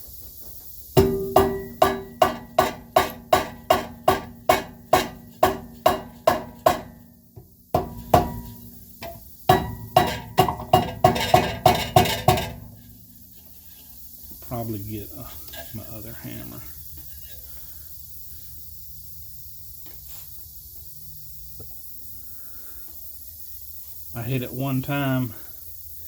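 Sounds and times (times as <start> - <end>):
hammer blows on brake drum: 1.0 - 13.1.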